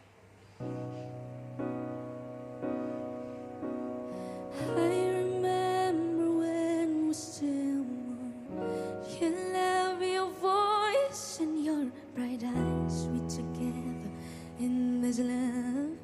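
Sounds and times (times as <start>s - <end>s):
soft piano: 0.0s - 16.0s
woman singing a ballad: 4.2s - 16.0s.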